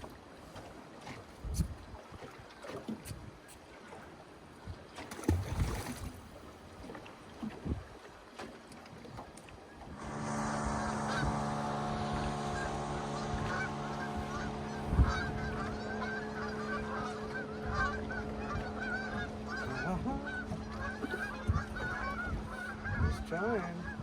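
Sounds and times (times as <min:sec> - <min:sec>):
motor hum: 0:09.7 - 0:24.0
birds honking: 0:09.9 - 0:24.0.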